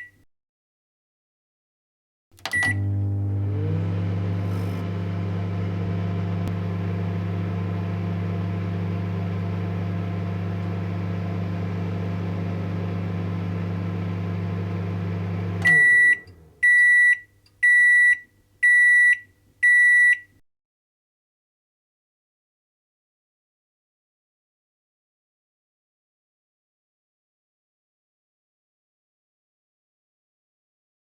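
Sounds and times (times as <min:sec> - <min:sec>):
microwave oven humming: 0:02.4 - 0:16.9
high microwave beeps: 0:02.5 - 0:03.0, 0:15.6 - 0:20.3.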